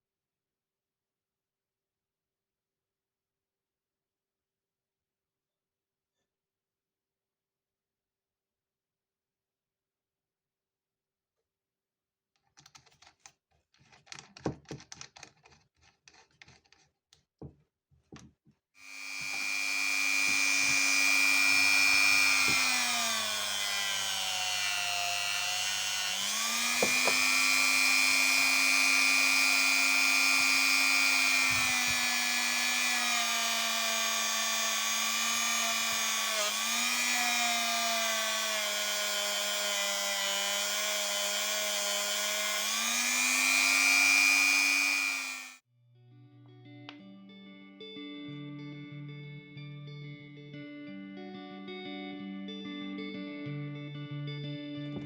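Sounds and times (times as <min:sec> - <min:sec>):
small power tool whining: 0:18.8 - 0:45.6.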